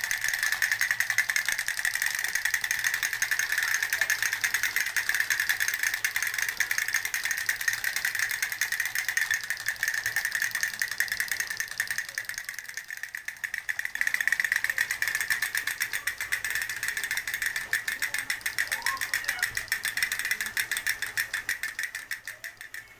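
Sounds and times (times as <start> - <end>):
rapid mechanical rattling: 0.0 - 22.9.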